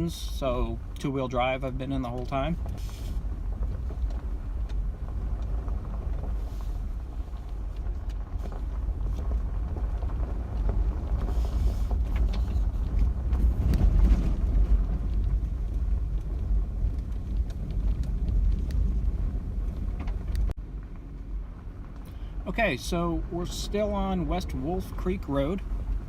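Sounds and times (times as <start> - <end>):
vehicle driving on gravel road: 0.0 - 26.0.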